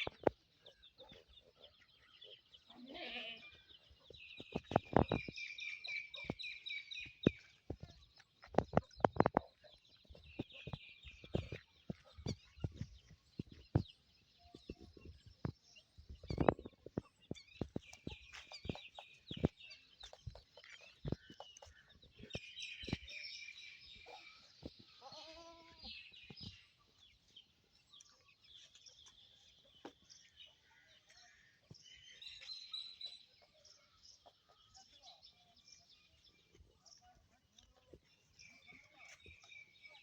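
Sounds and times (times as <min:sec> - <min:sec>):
chickens clucking: 0:00.0 - 0:02.5, 0:07.0 - 0:23.2
small birds chirping: 0:00.0 - 0:40.0.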